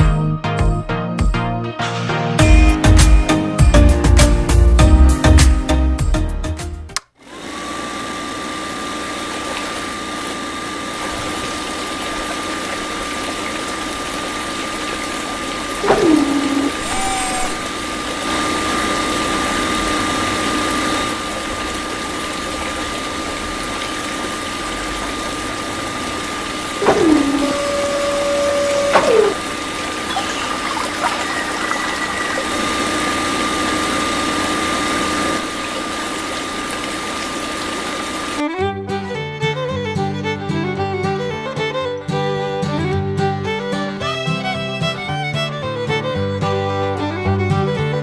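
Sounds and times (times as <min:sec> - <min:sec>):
electric water pump whining: 0:07.0 - 0:38.5
moving water hissing: 0:15.6 - 0:18.4, 0:24.7 - 0:38.4
brief sound sliding down in pitch: 0:15.8 - 0:17.6.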